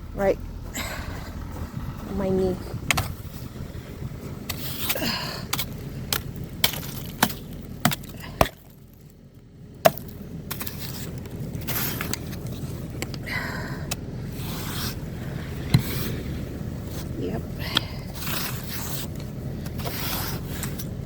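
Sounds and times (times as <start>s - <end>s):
scraping crunches of snow: 0.3s - 9.1s, 10.5s - 13.0s, 14.2s - 21.0s
snow and ice knocking: 0.8s - 9.2s, 9.8s - 13.0s.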